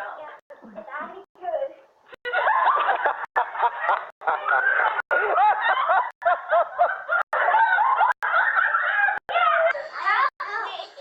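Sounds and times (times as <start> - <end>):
people laughing and snickering: 2.2 - 10.1.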